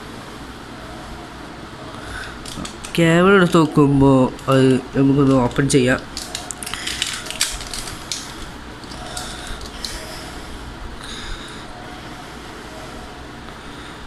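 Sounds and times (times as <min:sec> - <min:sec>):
cable rustling: 0:02.0 - 0:10.5
plastic packaging crinkling: 0:02.1 - 0:10.4.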